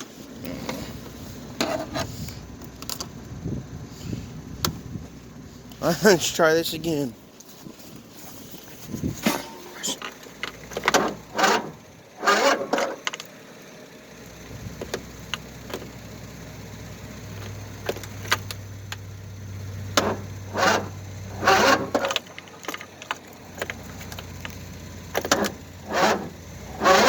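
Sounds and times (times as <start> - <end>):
low engine hum: 0.0 - 27.0
wind buffeting microphone: 3.3 - 5.1, 8.8 - 9.3.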